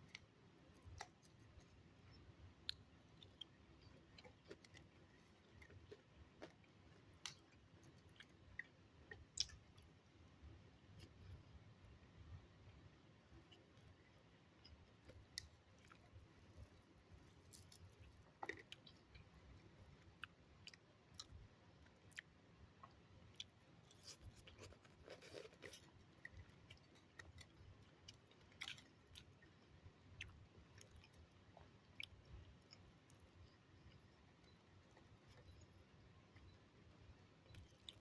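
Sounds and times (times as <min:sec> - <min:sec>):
close-up chewing: 0:00.0 - 0:10.0, 0:14.6 - 0:35.7, 0:37.4 - 0:38.0.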